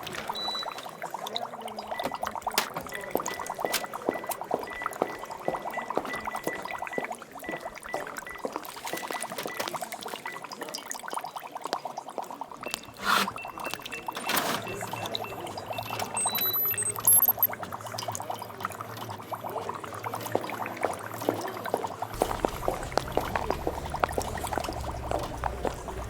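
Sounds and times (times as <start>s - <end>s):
liquid gurgling and pouring: 0.0s - 26.0s
rapid electronic beeps: 0.4s - 1.0s, 2.9s - 10.4s, 12.6s - 17.6s.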